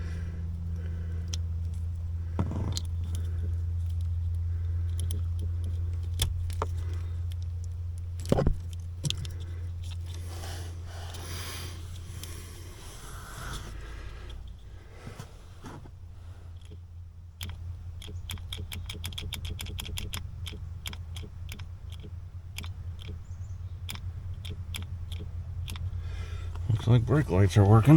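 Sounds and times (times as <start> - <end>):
steady low hum: 0.0 - 27.9
clicks and rattles under dashboard: 0.8 - 10.2, 16.6 - 27.9.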